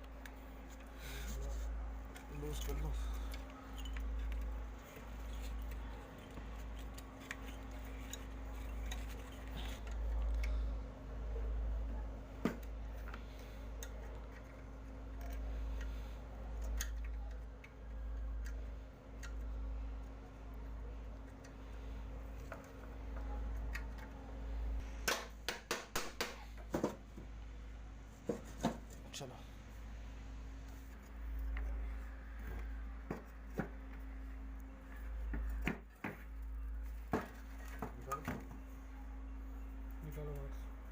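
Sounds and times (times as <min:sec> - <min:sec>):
low steady rumble: 0:00.0 - 0:25.1
low hum: 0:29.4 - 0:40.9.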